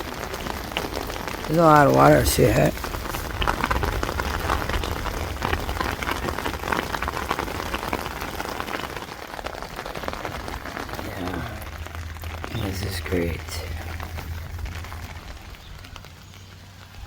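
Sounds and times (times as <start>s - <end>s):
heavy rain on a tent: 0.0s - 17.0s
low rumble: 10.1s - 17.0s.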